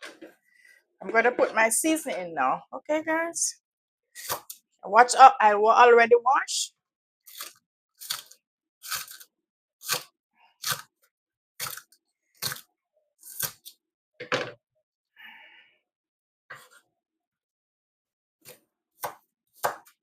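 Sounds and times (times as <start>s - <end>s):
knife cutting vegetable on board: 18.5s - 19.9s.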